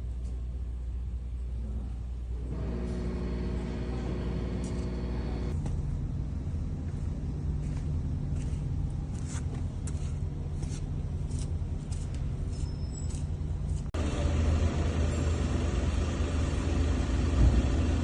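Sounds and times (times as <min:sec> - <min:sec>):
truck engine running: 0:02.4 - 0:07.9, 0:14.0 - 0:18.0.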